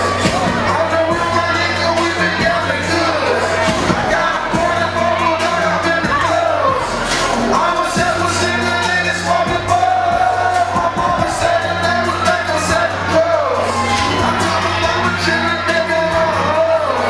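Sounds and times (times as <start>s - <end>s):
hip-hop backing track: 0.0s - 17.0s
person rapping: 0.0s - 17.0s.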